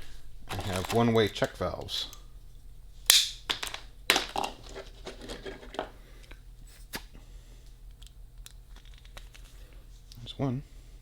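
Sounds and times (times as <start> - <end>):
plastic fittings rustling: 0.0 - 2.3, 3.0 - 6.8, 8.0 - 10.2.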